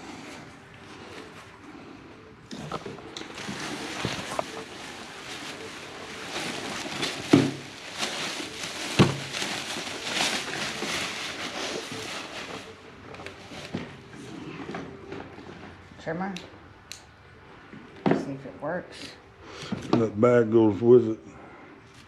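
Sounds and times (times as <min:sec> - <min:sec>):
bags rustling and crinkling: 0:00.0 - 0:16.0
objects knocking when set down: 0:07.2 - 0:07.7.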